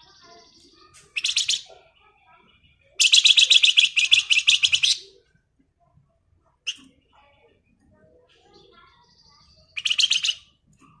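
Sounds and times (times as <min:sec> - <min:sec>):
songbird rapid rattling trill: 0:09.8 - 0:10.4.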